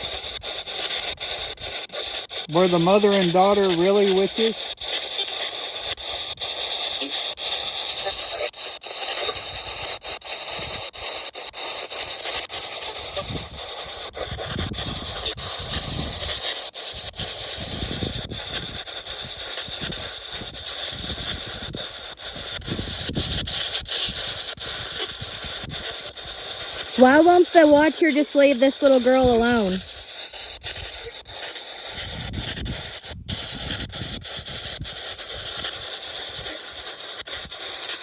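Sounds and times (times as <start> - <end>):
radio static hiss: 2.5 - 4.6, 27.0 - 29.9
snatches of broadcast sound: 27.0 - 29.8.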